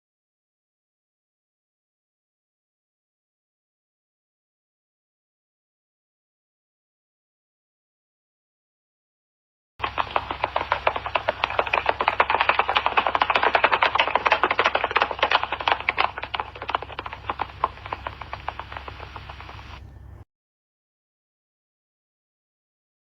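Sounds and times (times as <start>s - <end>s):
horse hoofbeats galloping: 9.8s - 19.9s.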